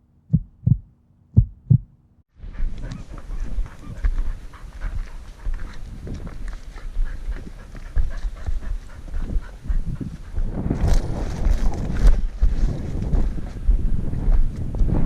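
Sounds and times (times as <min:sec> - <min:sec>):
low wind rumble: 0:00.2 - 0:15.0
dog panting: 0:02.5 - 0:10.6
rustling and crackling: 0:02.6 - 0:14.8.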